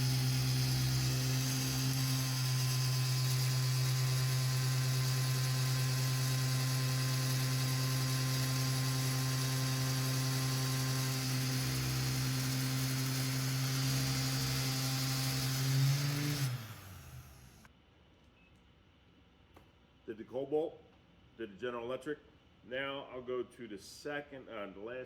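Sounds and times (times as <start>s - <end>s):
heat gun fan humming: 0.0s - 17.7s.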